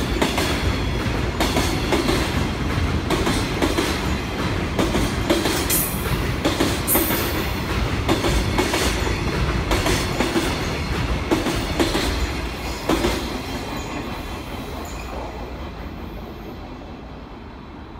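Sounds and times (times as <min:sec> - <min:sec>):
train wheels clacking over rail joints: 0:00.0 - 0:14.8.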